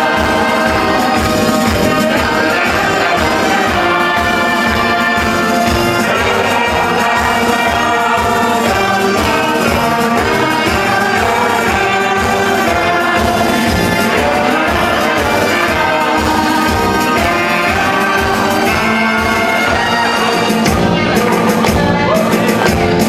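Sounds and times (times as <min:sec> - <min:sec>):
live band playing upbeat tune: 0:00.0 - 0:23.0.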